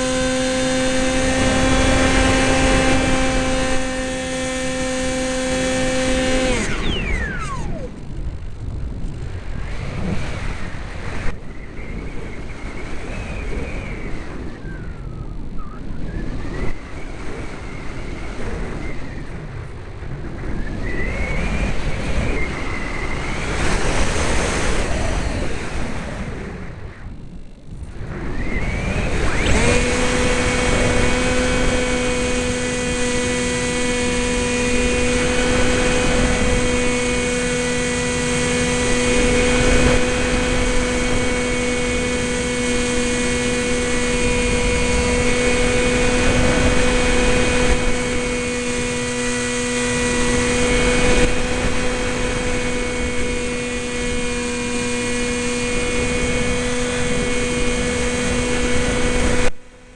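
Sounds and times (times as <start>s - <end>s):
electric motor and propeller whine: 0.0s - 59.9s.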